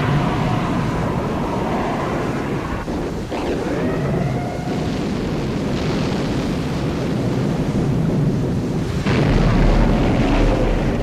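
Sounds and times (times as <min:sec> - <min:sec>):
deep rumble: 0:00.0 - 0:11.0
sea noise: 0:00.0 - 0:11.0
wind: 0:00.0 - 0:11.0
heavy blast: 0:08.8 - 0:11.0.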